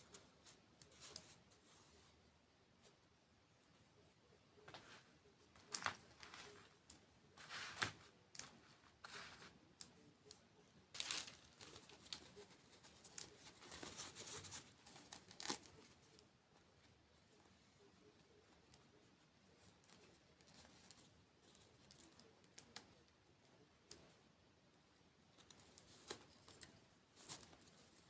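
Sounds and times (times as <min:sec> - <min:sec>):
crisp crackling and crinkling: 0:04.6 - 0:24.2, 0:25.2 - 0:28.0.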